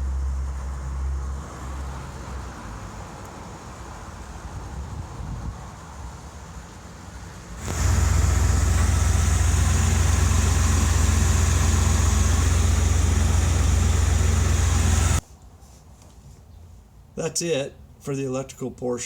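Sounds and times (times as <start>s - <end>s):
engine idling with low hum: 7.6s - 15.2s.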